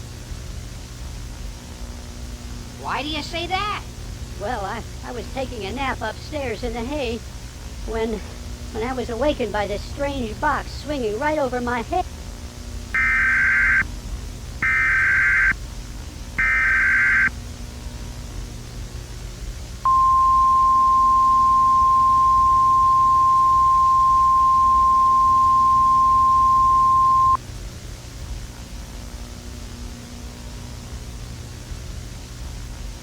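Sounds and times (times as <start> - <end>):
digital data bursts: 13.0 - 13.8, 14.6 - 15.6, 16.4 - 17.3, 19.9 - 27.4.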